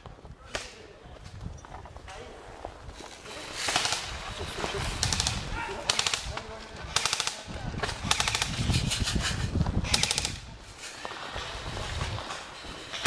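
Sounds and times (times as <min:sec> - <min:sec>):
airsoft guns firing bursts: 0:03.5 - 0:08.6, 0:09.8 - 0:10.4.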